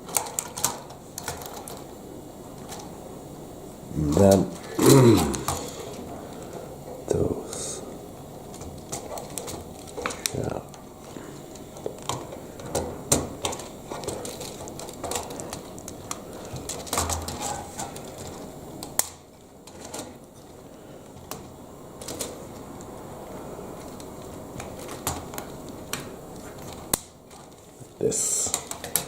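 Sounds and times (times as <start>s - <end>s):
plastic parts clicking and clattering: 0.1s - 1.8s, 11.8s - 20.2s, 21.2s - 22.4s, 28.3s - 29.0s.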